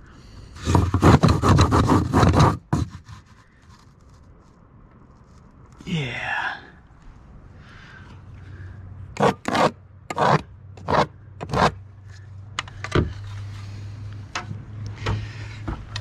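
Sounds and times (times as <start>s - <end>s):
scraping strokes against wood: 0.6s - 4.6s, 9.2s - 13.9s.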